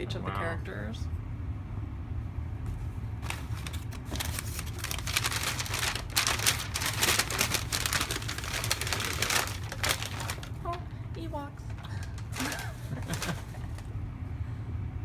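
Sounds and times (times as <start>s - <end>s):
paper wrapping crinkling and tearing: 3.2s - 13.9s.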